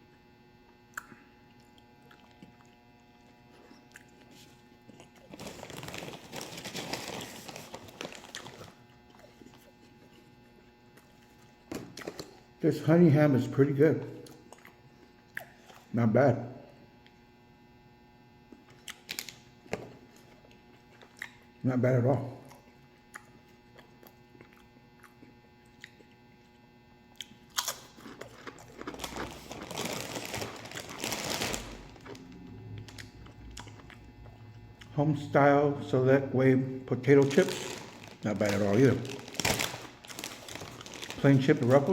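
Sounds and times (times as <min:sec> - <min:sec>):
chewing a sandwich: 0:00.0 - 0:12.6, 0:14.2 - 0:16.0, 0:18.4 - 0:21.6, 0:22.4 - 0:35.0
small mouth clicks: 0:00.9 - 0:02.8, 0:22.4 - 0:26.2
chip bag crinkling: 0:04.3 - 0:09.8, 0:18.7 - 0:19.8, 0:27.4 - 0:34.0, 0:37.0 - 0:41.9.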